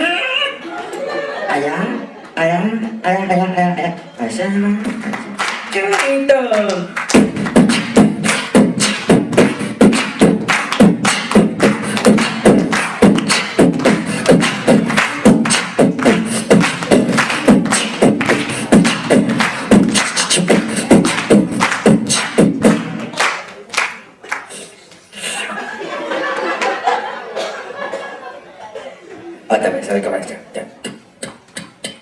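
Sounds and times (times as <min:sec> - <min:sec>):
man beatboxing into a microphone: 0:02.4 - 0:23.2, 0:30.2 - 0:32.0.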